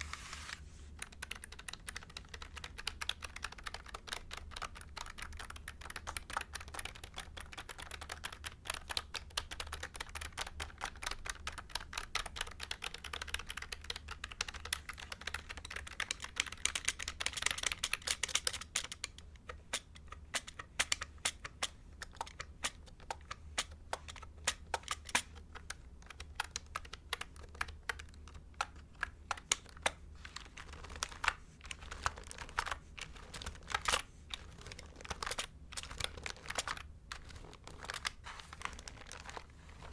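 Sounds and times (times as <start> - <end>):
typing on mechanical keyboard: 1.0 - 39.9.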